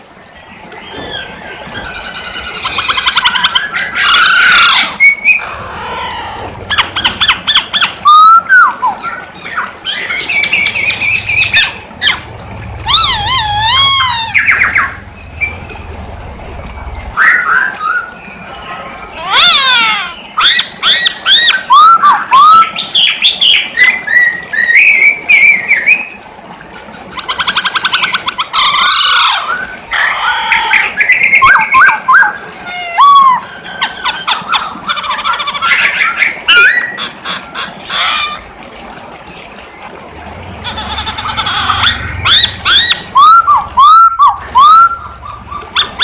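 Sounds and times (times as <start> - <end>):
bird singing whistled glides: 0.0 - 26.2, 27.1 - 37.1, 40.6 - 46.0.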